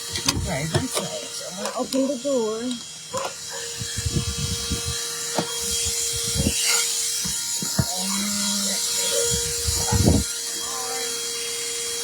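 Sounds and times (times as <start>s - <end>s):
handheld vacuum cleaner running: 0.0s - 12.0s.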